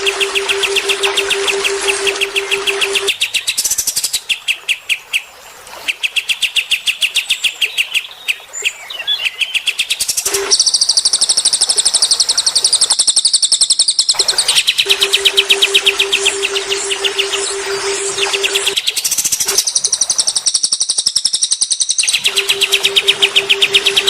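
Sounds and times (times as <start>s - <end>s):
songbird chirps: 0.0s - 24.0s
songbird trill: 5.9s - 24.0s.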